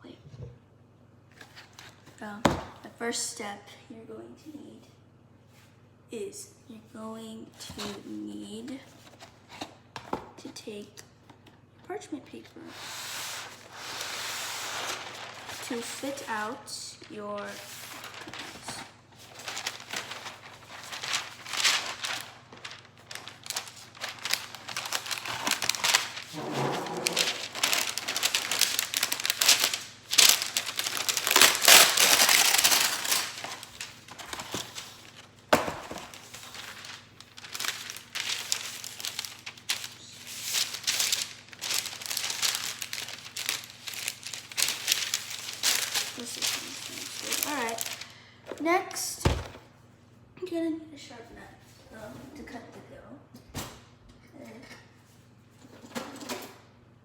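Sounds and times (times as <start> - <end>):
paper crinkling and rustling: 1.4 - 2.2, 13.2 - 48.7.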